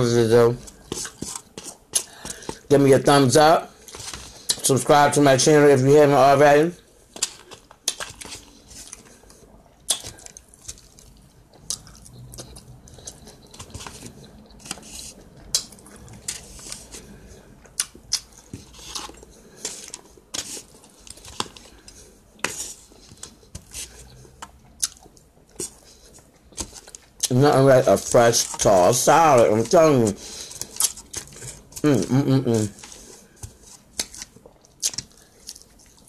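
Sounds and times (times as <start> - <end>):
crunchy chewing: 7.1 - 27.4, 30.3 - 31.9, 32.6 - 36.0.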